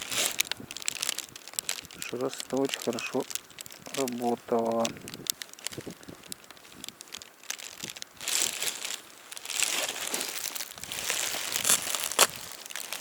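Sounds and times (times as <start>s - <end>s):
small clicks: 0.0s - 8.9s
rustling and crinkling handling: 0.0s - 13.0s.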